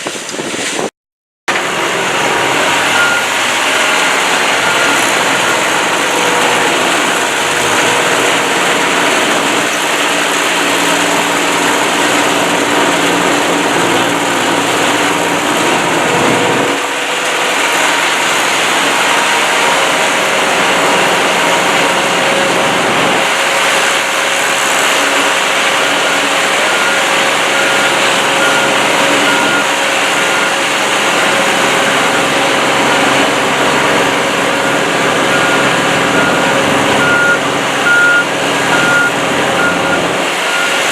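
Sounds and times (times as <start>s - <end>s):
screening plant machine noise: 1.5s - 40.9s
faint reversing alarm beeps: 2.9s - 3.3s, 34.6s - 40.8s.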